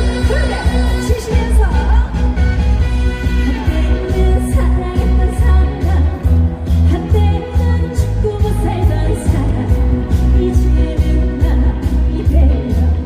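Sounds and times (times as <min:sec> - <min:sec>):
person singing over backing track: 0:00.0 - 0:02.0.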